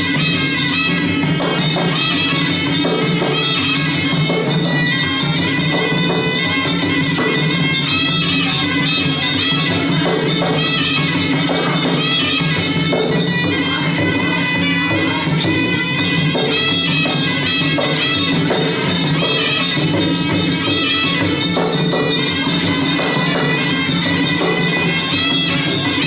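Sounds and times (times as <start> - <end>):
percussion: 0.0 - 26.0.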